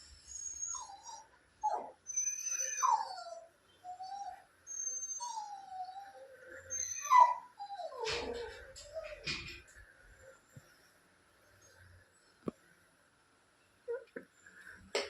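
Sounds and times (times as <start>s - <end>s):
dog whining: 0.3s - 9.6s.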